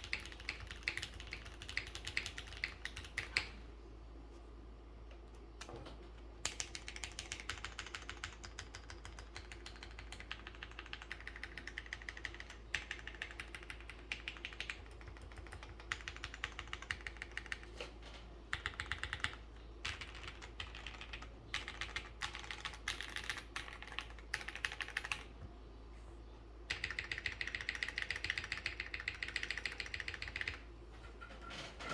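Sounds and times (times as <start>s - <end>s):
typing on mechanical keyboard: 0.0s - 3.5s, 6.4s - 17.7s, 18.5s - 25.3s, 26.7s - 30.6s.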